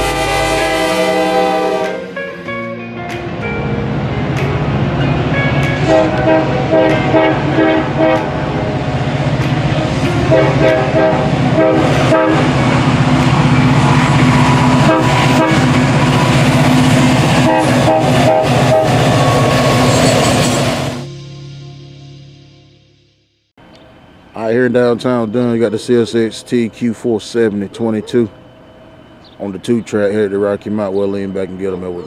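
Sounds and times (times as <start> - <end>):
locomotive horn short blasts: 0.0 - 2.5, 5.8 - 8.4, 10.2 - 21.2
diesel locomotives droning: 0.0 - 22.8, 23.6 - 32.0
train rolling: 3.5 - 21.1, 23.6 - 32.0.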